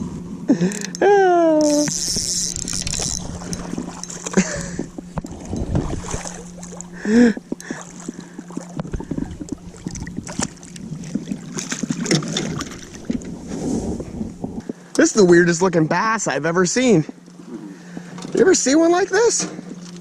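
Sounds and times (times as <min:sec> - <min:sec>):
rod and reel clicks and knocks: 0:00.7 - 0:05.9.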